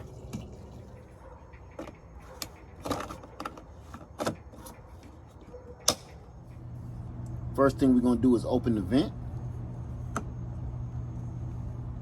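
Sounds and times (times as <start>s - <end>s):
clicks and knocks of handling: 1.8s - 6.1s.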